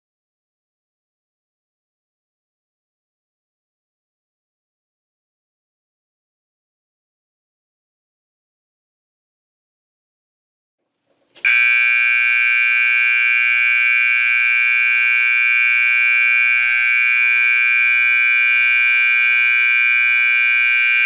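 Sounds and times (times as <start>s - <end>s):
fire alarm horn buzzing: 11.4s - 21.0s.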